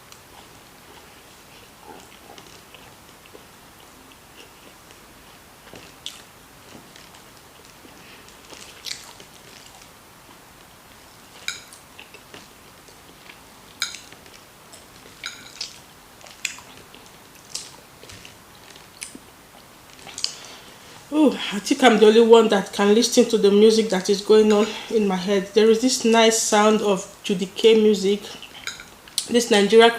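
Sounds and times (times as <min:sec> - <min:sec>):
person chewing food: 0:00.0 - 0:21.1.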